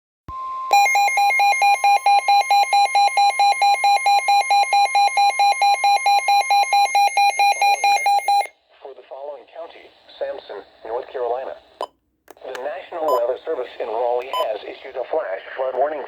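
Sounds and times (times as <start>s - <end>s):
rapid alarm beeping: 0.7s - 8.5s.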